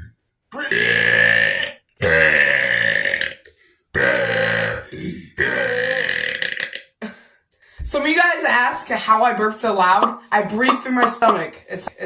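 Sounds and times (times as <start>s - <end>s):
person burping loudly: 0.0s - 7.0s, 10.0s - 11.5s.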